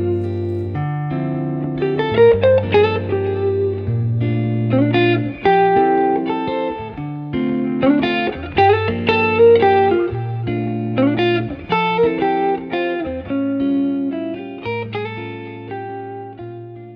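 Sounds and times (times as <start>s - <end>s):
bass line: 0.0s - 6.2s
plucked guitar: 0.0s - 16.9s.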